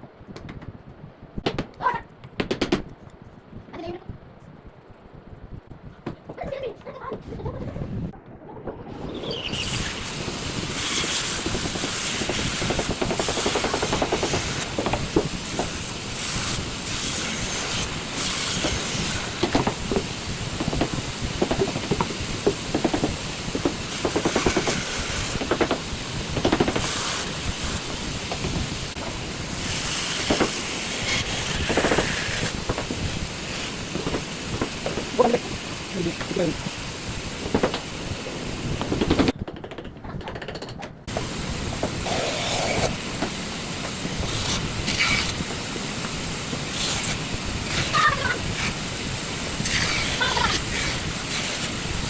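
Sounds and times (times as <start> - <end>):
tool grinding wood: 10.6 - 28.4, 29.6 - 36.6, 41.8 - 43.0, 44.1 - 45.5
wood scraping strokes: 41.1 - 51.9.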